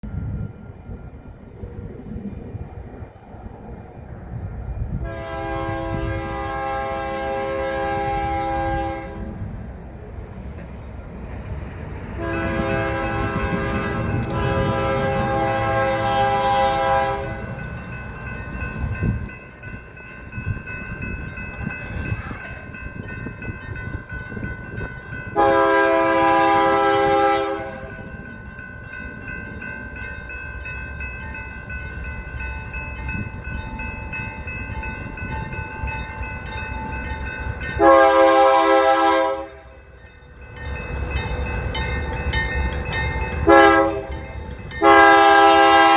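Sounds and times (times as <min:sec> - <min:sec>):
freight train rumbling: 0:00.0 - 0:45.9
locomotive air horn blasts: 0:05.0 - 0:09.4, 0:12.2 - 0:17.6, 0:25.4 - 0:28.0, 0:37.8 - 0:39.8, 0:43.5 - 0:44.2, 0:44.8 - 0:45.9
wheels clacking over rail joints: 0:09.4 - 0:25.3, 0:40.2 - 0:45.9.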